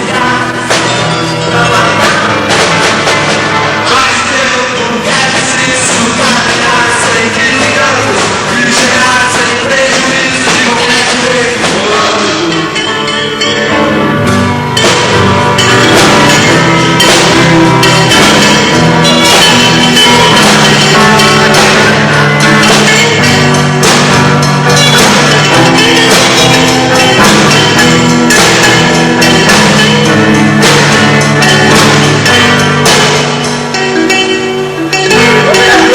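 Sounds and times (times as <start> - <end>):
live rock band playing: 0.0 - 35.9.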